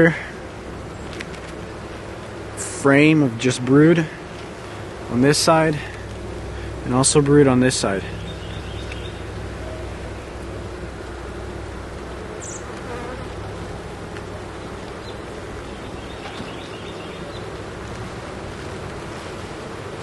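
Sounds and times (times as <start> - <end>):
honeybees humming and buzzing: 0.0 - 20.0.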